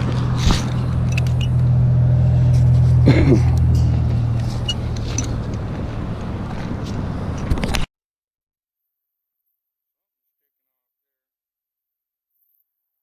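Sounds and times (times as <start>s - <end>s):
vehicle engine humming: 0.0s - 7.9s.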